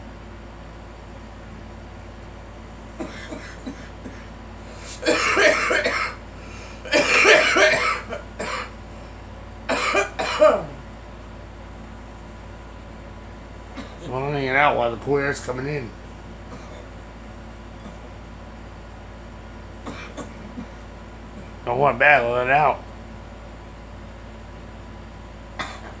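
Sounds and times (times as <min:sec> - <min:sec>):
air conditioner humming: 0:00.0 - 0:26.0
girl coughing: 0:03.0 - 0:04.3, 0:04.9 - 0:06.2, 0:06.9 - 0:08.8, 0:09.7 - 0:10.8, 0:13.8 - 0:14.1, 0:16.5 - 0:16.9, 0:19.9 - 0:20.8, 0:25.6 - 0:26.0.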